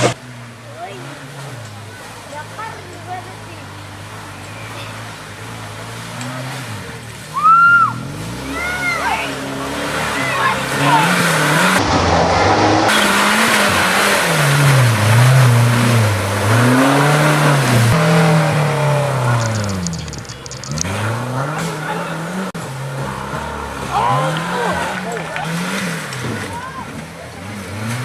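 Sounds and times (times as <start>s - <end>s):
vehicle engine revving: 0.0s - 28.0s
steady rushing noise: 10.3s - 15.0s.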